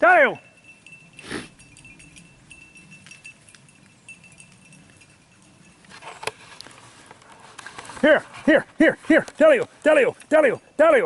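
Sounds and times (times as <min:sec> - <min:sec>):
small bell tinkling: 0:00.0 - 0:06.2, 0:10.0 - 0:11.0
low rustle: 0:00.7 - 0:10.3.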